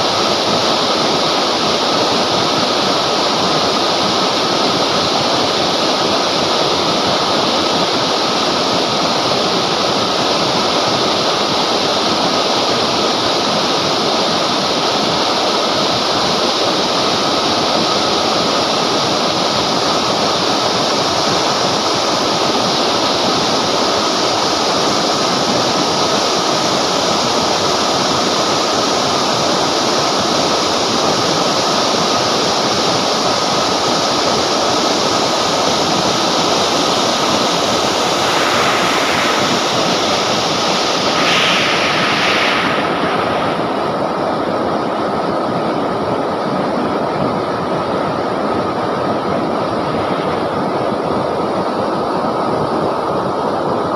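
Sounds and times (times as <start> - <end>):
river water rushing: 33.6 - 45.5.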